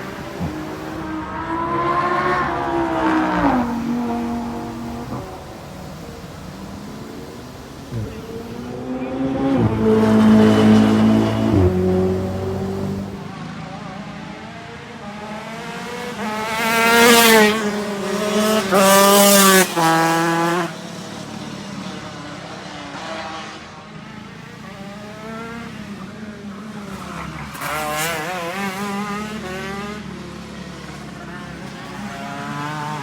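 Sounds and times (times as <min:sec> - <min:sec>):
racing car engines revving: 0:00.0 - 0:33.0.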